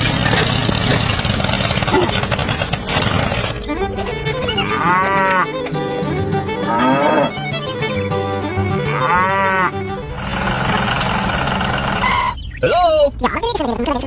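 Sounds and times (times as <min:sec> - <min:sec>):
background music: 0:01.3 - 0:11.3
long moo-like calls: 0:03.7 - 0:11.2.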